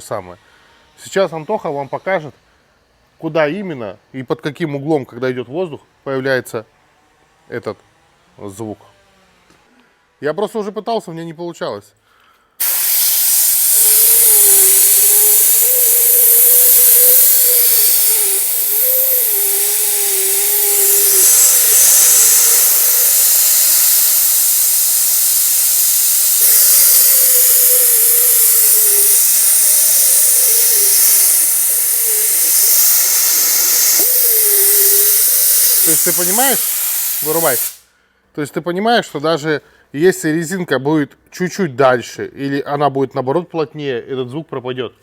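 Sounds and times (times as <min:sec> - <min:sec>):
air jet hissing against rubber seal: 0:12.6 - 0:37.9.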